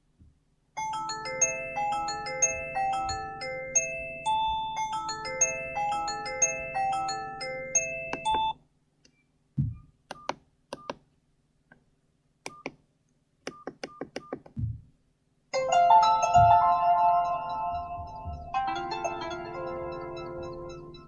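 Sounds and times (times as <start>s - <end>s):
chime-like ringtone: 0.8s - 8.5s, 15.6s - 21.0s
melodic phone ringtone: 0.8s - 8.6s, 15.6s - 21.0s
keypad beeps: 7.8s - 8.6s, 9.7s - 11.0s, 12.5s - 12.8s, 13.5s - 14.5s
low thumps: 9.6s - 9.9s, 14.5s - 15.0s, 16.3s - 17.0s, 17.6s - 19.0s.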